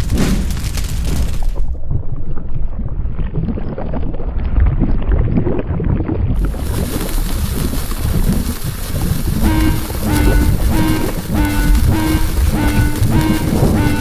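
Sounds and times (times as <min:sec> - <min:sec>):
low rumble: 0:00.0 - 0:14.0
hiss: 0:06.4 - 0:14.0.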